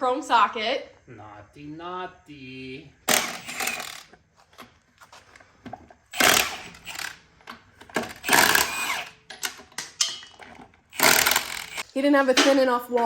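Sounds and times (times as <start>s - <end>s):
impact wrench running: 3.1s - 4.2s, 6.1s - 9.6s, 10.5s - 11.9s.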